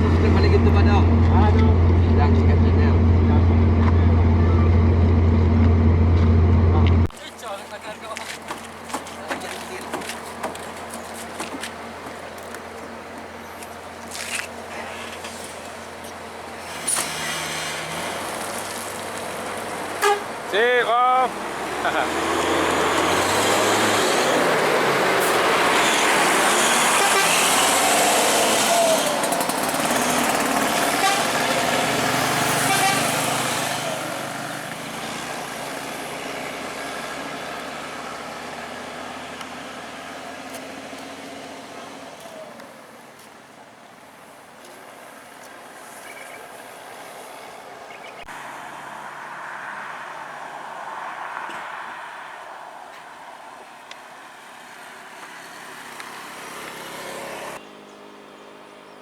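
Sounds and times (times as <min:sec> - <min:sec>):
steady low hum: 0:00.0 - 0:07.1
heavy vehicle driving past: 0:00.0 - 0:07.2
low engine hum: 0:00.0 - 0:16.6
heavy vehicle engine and road noise: 0:00.0 - 0:59.0.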